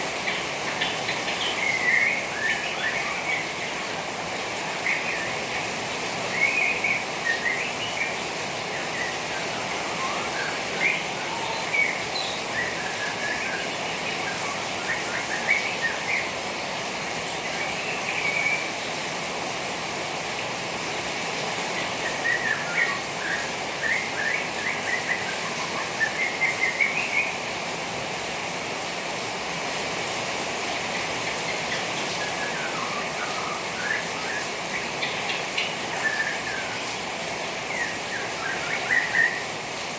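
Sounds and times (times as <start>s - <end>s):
trickling water: 0.0s - 39.9s
bird twittering: 0.2s - 3.8s, 6.3s - 16.3s, 30.8s - 36.8s, 37.7s - 39.5s.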